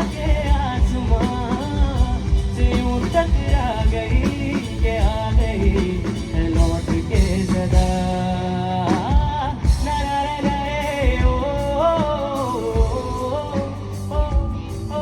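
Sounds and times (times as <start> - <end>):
drum kit beats: 0.0 - 15.0
live band playing: 0.0 - 15.0
person singing: 0.0 - 15.0.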